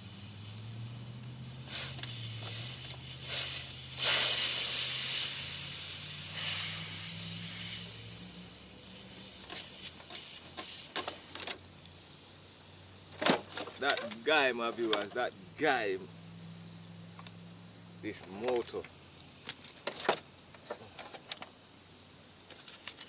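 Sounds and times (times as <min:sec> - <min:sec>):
low steady hum: 0:00.0 - 0:22.8
hissing bursts: 0:00.0 - 0:23.0
light clicks and knocks: 0:13.2 - 0:15.3.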